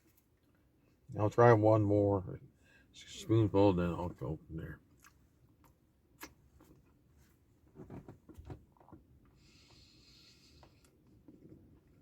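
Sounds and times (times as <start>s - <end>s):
soft breath through nose: 9.3s - 11.0s.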